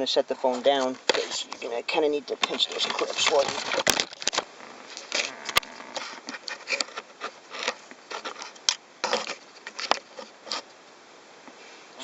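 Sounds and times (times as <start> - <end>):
plastic trim scraping and clicking: 2.3 - 10.7.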